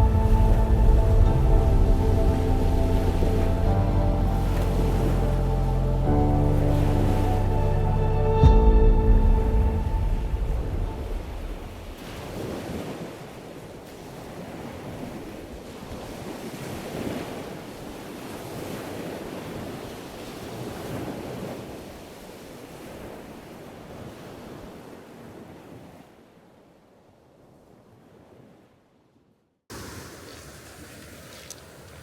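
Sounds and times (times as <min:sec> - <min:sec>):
waves breaking on beach: 0:00.0 - 0:07.6, 0:09.2 - 0:28.8, 0:29.7 - 0:32.0
wind on microphone: 0:00.0 - 0:21.9.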